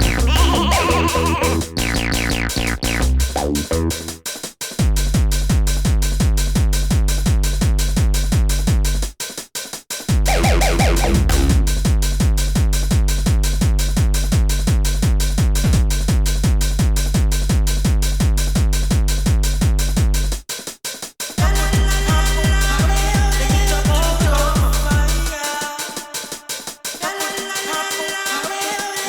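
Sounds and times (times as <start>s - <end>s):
electronic dance music: 0.0s - 4.3s, 10.3s - 11.9s, 21.4s - 29.0s.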